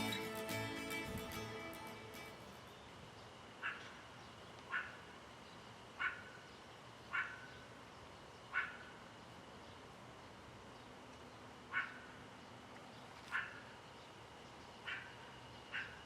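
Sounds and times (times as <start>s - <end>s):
meerkat barking: 4.7s - 5.0s, 6.0s - 6.4s, 7.1s - 7.5s, 8.5s - 8.9s, 11.7s - 12.1s, 13.3s - 13.6s, 14.8s - 16.0s.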